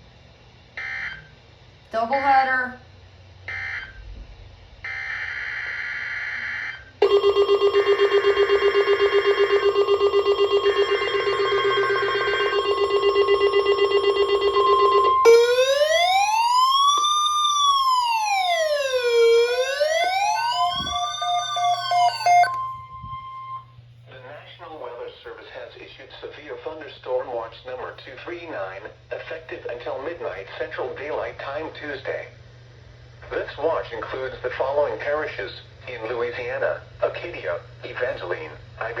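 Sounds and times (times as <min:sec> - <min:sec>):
loud buzzing alarm tone: 0:04.8 - 0:23.8
siren wailing: 0:04.9 - 0:23.7
screeching data bursts: 0:07.0 - 0:23.6
steady high alert tone: 0:07.0 - 0:23.6.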